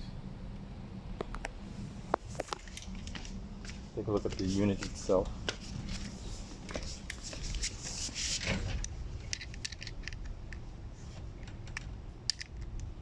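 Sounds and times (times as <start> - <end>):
low steady background hum: 0.0 - 13.0
plastic clicks and rattles: 8.8 - 10.6, 11.4 - 12.9.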